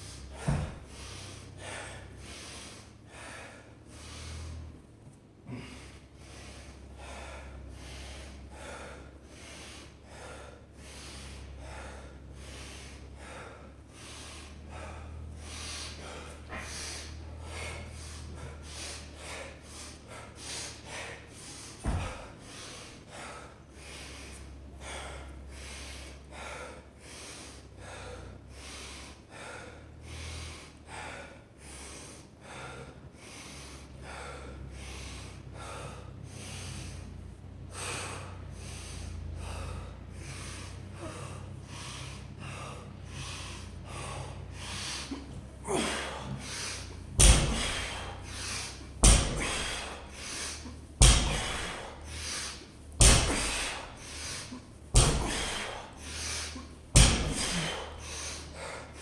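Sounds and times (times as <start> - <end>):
man breathing hard: 0.0 - 59.0
thump: 0.4 - 0.9, 21.8 - 22.3, 49.0 - 49.8, 51.0 - 51.8, 55.0 - 55.8, 57.0 - 57.6.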